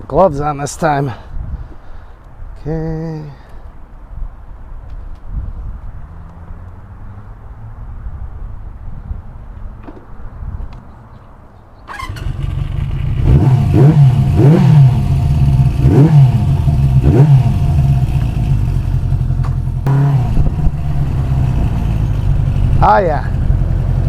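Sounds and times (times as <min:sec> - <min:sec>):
motorcycle engine revving: 0:11.9 - 0:24.0.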